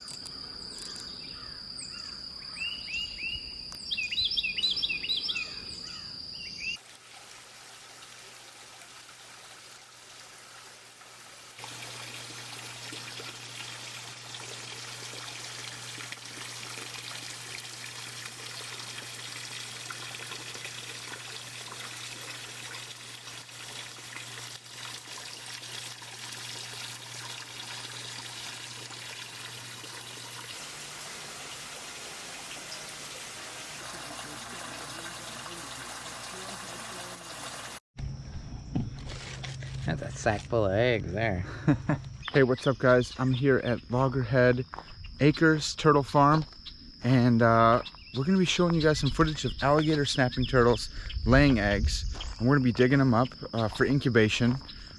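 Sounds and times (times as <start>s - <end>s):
birds chirping: 0.0s - 6.8s, 41.9s - 53.5s
water trickling and pouring: 6.8s - 37.8s.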